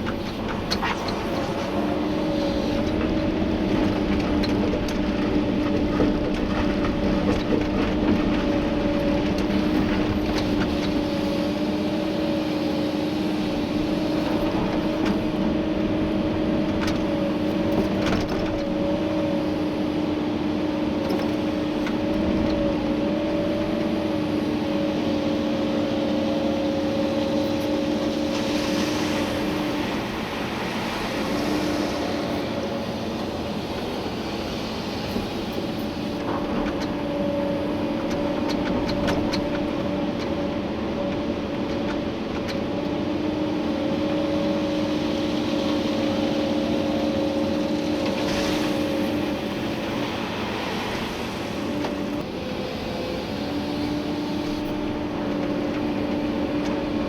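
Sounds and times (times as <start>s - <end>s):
excavator engine and hydraulics: 0.0s - 57.0s.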